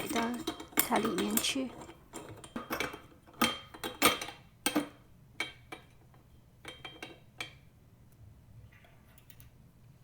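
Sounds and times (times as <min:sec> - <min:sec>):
metal parts clinking: 0:00.0 - 0:04.3.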